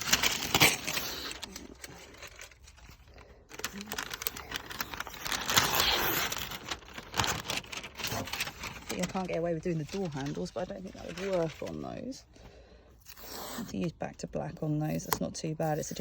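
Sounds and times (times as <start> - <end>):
masking tape peeling and crinkling: 0.0 - 11.8.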